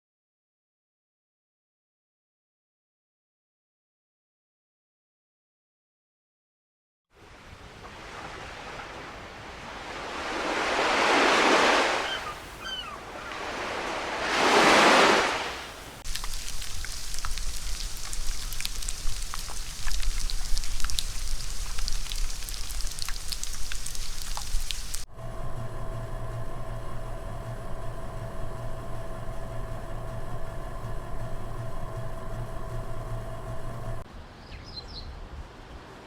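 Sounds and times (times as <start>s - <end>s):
ocean waves washing: 7.2s - 34.0s
rain pattering: 14.6s - 34.0s.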